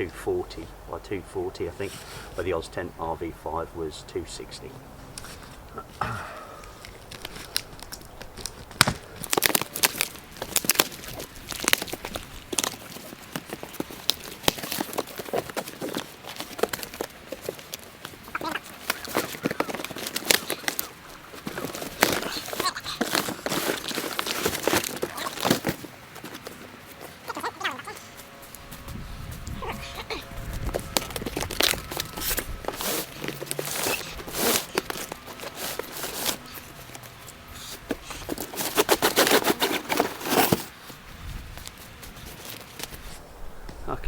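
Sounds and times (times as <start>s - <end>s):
packaging crinkling and rustling: 6.8s - 43.2s
packaging tearing: 7.0s - 28.0s, 29.9s - 40.8s.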